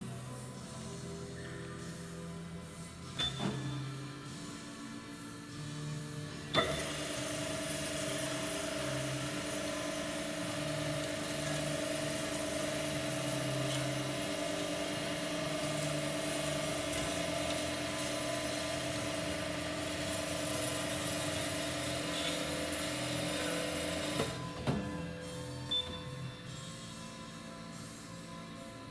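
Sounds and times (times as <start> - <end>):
bandsaw humming and whining: 3.8 - 25.4.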